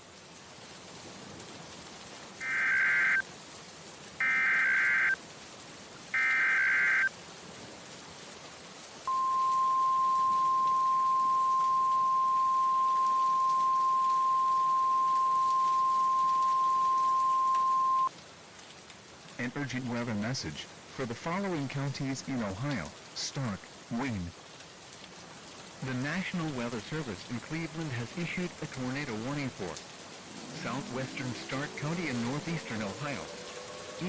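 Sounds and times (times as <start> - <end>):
steady attention tone: 9.1 - 18.1
warbling data tones: 9.1 - 18.1
steady hiss: 18.7 - 34.0.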